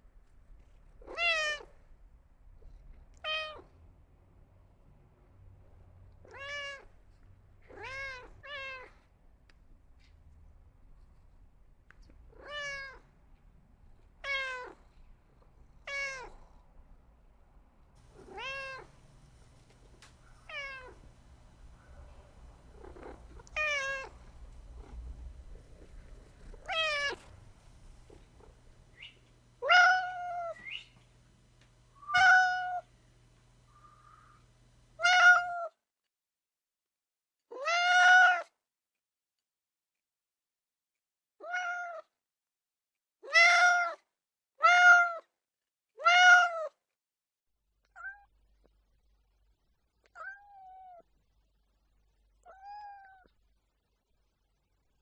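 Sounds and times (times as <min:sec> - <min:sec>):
cat meowing: 0:06.2 - 0:06.9, 0:12.4 - 0:13.0, 0:18.1 - 0:31.0, 0:32.0 - 0:32.9, 0:35.0 - 0:35.6, 0:41.4 - 0:42.0, 0:46.0 - 0:46.7.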